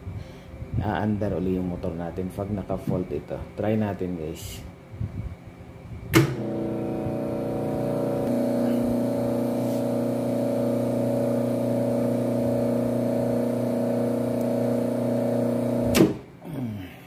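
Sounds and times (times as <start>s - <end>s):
electric motor humming: 6.2s - 16.1s.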